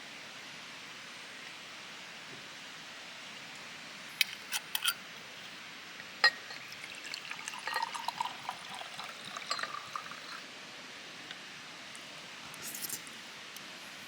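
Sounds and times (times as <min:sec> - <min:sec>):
liquid pouring and gurgling: 0:06.2 - 0:10.4.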